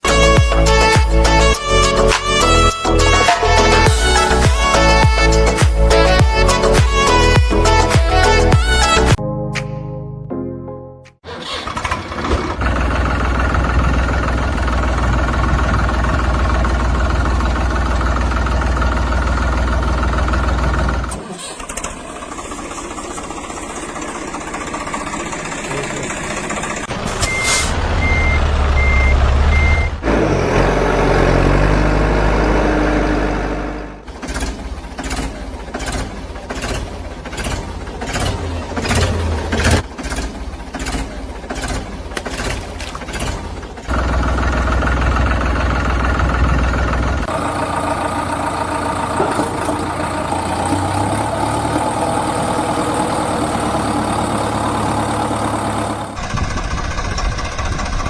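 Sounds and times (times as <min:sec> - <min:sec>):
heavy vehicle engine rumble: 0:00.0 - 0:09.2, 0:11.3 - 0:42.2, 0:43.0 - 0:58.0
rapid knocking engine: 0:12.0 - 0:21.1, 0:21.7 - 0:26.9, 0:43.1 - 0:50.5, 0:56.2 - 0:58.0
reversing alarm beeping: 0:27.2 - 0:30.0.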